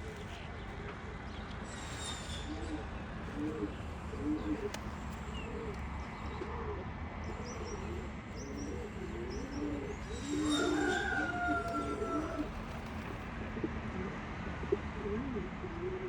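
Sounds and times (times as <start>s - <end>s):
pigeon cooing: 2.4s - 13.2s, 14.7s - 16.0s
small birds chirping: 7.2s - 13.2s.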